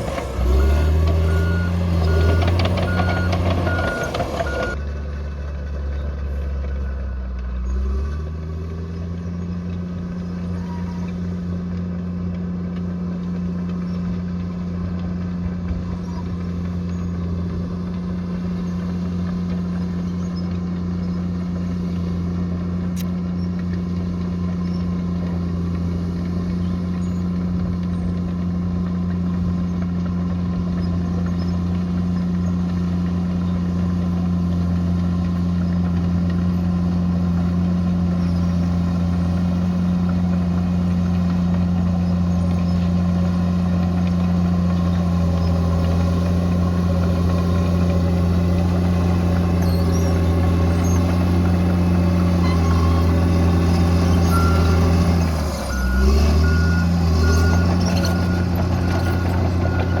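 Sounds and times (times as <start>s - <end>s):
bulldozer diesel engine running: 0.0s - 60.0s
reversing alarm beeping: 0.4s - 4.8s, 54.1s - 60.0s.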